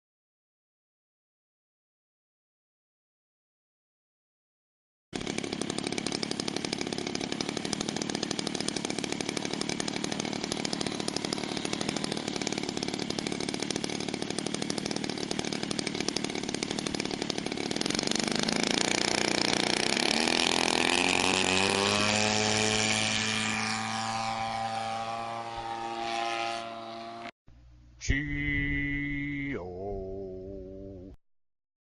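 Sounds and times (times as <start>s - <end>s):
two-stroke model plane engine revving: 5.2s - 27.4s.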